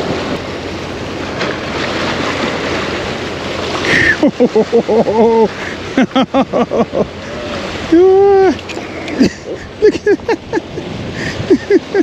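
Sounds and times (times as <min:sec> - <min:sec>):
surf rushing: 0:00.0 - 0:12.0
wind on microphone: 0:07.1 - 0:12.0.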